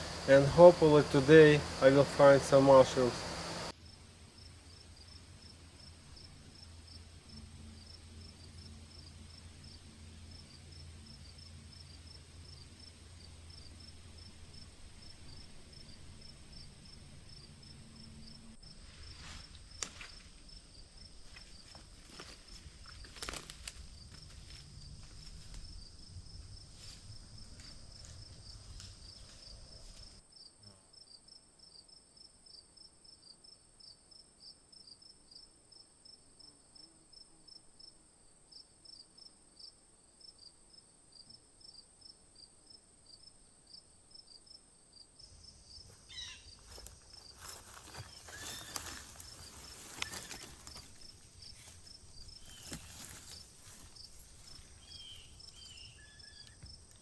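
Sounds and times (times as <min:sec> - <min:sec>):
high insect buzz: 0:00.0 - 0:03.7, 0:45.2 - 0:57.0
crickets chirping: 0:00.0 - 0:30.2, 0:43.1 - 0:57.0
footsteps rustling through leaf litter: 0:46.6 - 0:55.4.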